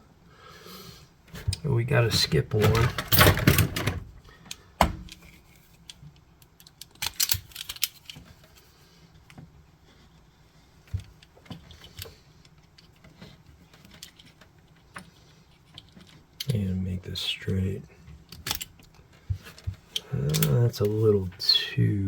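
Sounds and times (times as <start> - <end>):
clicks from handling wires and tools: 18.2 - 21.0.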